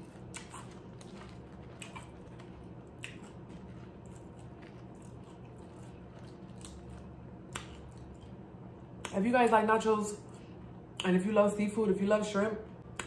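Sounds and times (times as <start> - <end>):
close chewing of food: 0.0 - 9.2
wet mouth clicks and smacks: 1.7 - 3.5, 4.2 - 8.4.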